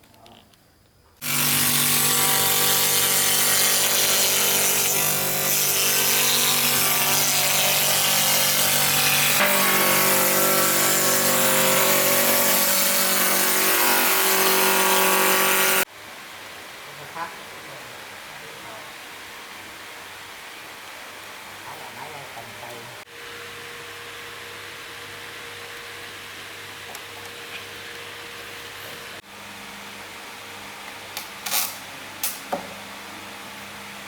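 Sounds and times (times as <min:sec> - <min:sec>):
woodworking power tool running: 0:01.2 - 0:15.9.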